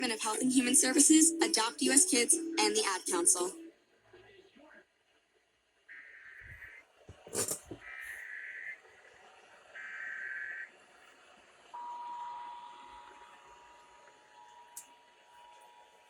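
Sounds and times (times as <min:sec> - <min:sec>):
two-tone attention signal: 0:00.0 - 0:03.7
click: 0:14.7 - 0:14.9.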